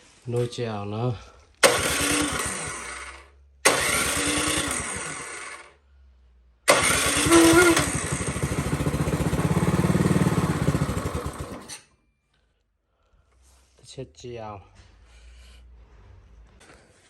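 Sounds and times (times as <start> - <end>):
small gas engine cranking: 1.6 - 5.7, 6.7 - 11.9.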